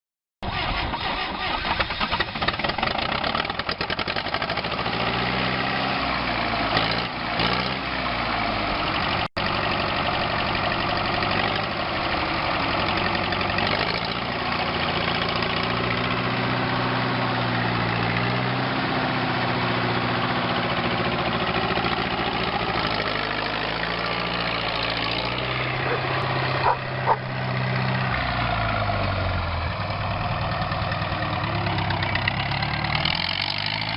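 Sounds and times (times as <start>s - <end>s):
tractor diesel engine revving: 0.4s - 33.9s.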